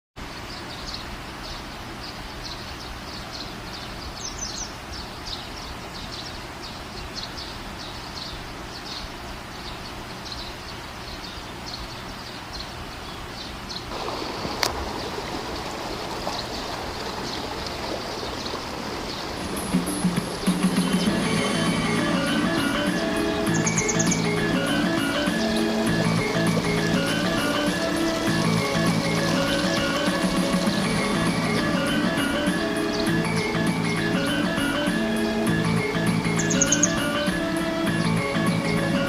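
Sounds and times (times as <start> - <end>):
waterfall rushing water: 13.9 - 39.0.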